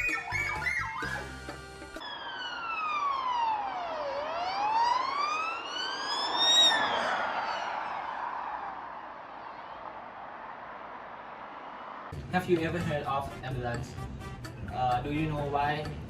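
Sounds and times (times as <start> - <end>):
siren sweeping: 0.0 - 10.4.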